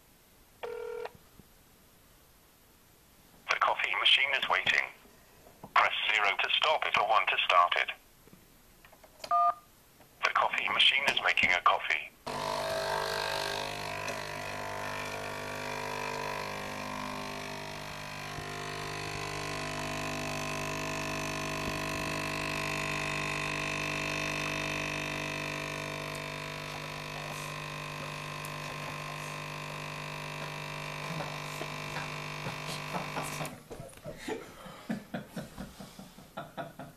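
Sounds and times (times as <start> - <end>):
coffee machine pump humming: 12.3 - 33.6.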